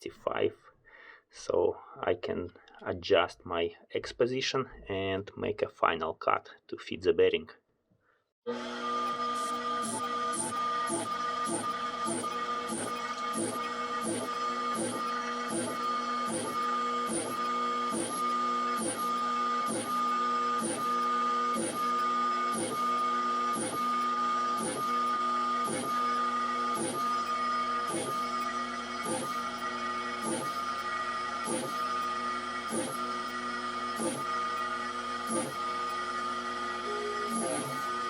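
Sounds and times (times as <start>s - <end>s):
stepper motors whining: 8.5s - 38.0s.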